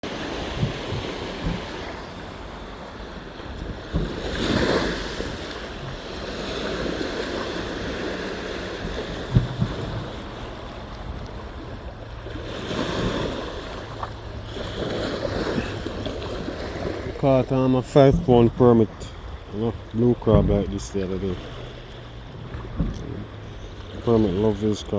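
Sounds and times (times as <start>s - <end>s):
waves washing in: 0.0s - 24.9s
wind buffeting microphone: 0.0s - 24.9s.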